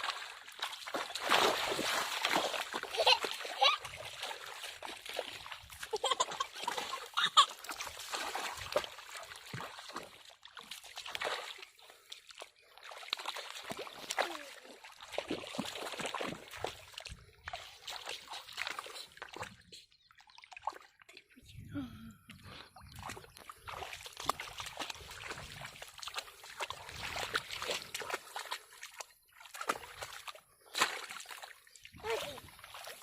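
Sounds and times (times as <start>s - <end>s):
pond water splashing: 0.0s - 33.0s.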